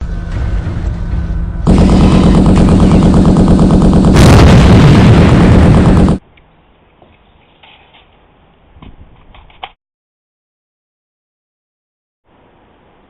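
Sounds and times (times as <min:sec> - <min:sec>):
loud blast: 0:00.0 - 0:06.2
rapid gunfire: 0:01.7 - 0:06.2.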